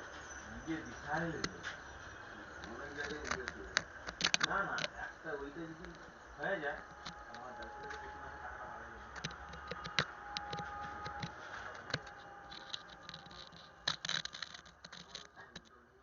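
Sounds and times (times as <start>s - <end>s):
objects being handled: 0.9s - 5.0s, 9.0s - 15.8s.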